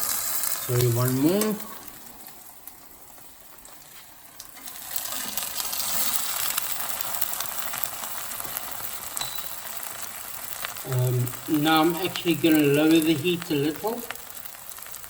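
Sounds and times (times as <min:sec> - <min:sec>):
sandwiches sizzling in a pan: 0:00.0 - 0:15.0.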